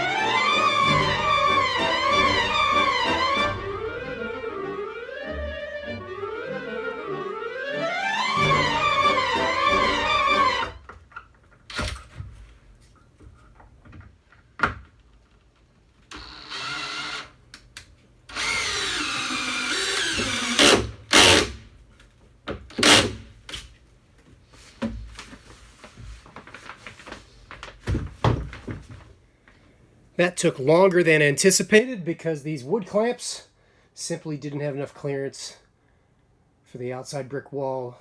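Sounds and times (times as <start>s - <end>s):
clarinet music: 0.0s - 10.8s
power drill driving screws: 16.1s - 17.4s, 18.3s - 21.6s, 22.7s - 23.3s.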